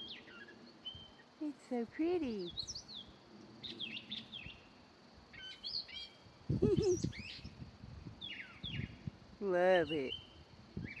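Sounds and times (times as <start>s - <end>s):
songbird chirping: 0.0s - 11.0s.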